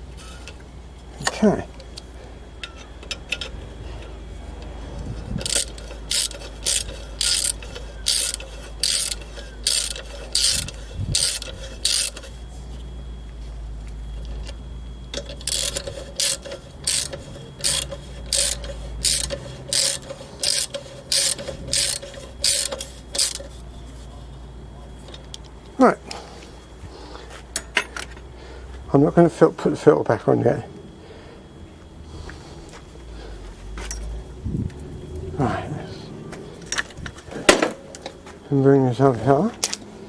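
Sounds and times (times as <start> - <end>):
ratchet wrench clicking: 5.3 - 12.4, 15.2 - 23.6.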